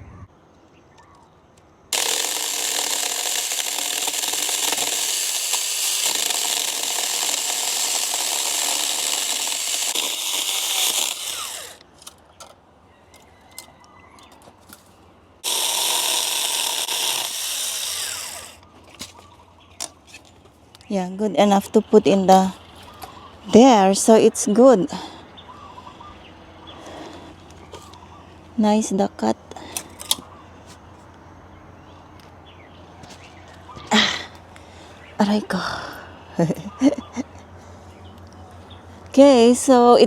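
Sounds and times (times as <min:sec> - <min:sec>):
electric chainsaw buzzing: 0:01.9 - 0:11.9, 0:15.4 - 0:18.6.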